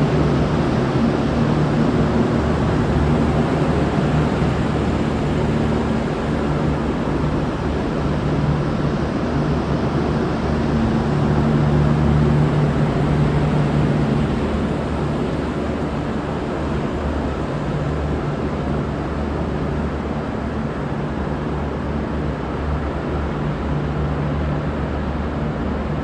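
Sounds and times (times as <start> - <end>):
diesel railcar engines humming: 0.0 - 25.1.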